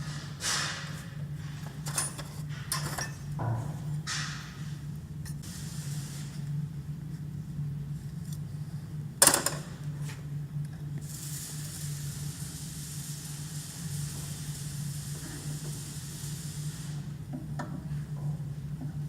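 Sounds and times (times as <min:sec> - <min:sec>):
steady hiss: 0:05.4 - 0:06.4, 0:11.0 - 0:17.3.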